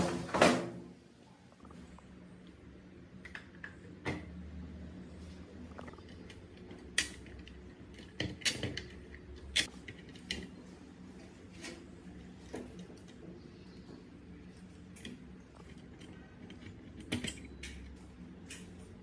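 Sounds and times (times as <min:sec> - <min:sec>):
metal parts clicking and clinking: 0:05.9 - 0:10.6, 0:14.6 - 0:18.8.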